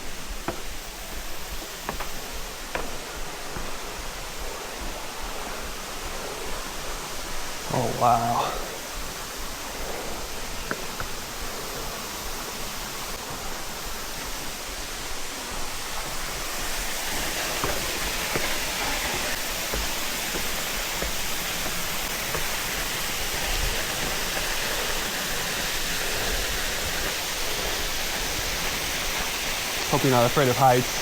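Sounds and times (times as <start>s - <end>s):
waterfall rushing: 7.5s - 31.0s.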